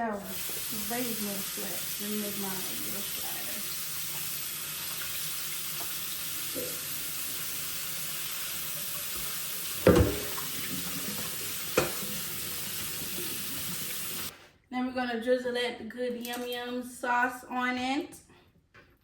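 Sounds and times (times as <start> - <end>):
utensil knocking on a plate: 9.8 - 10.4.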